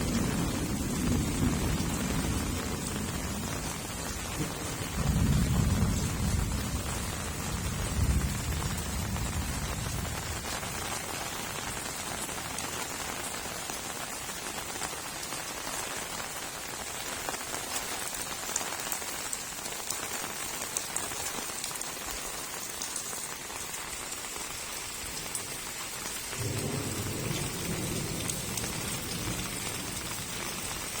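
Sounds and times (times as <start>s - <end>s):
low thunder rumbling: 0.0s - 10.9s, 26.4s - 31.0s
heavy rain falling: 0.0s - 31.0s.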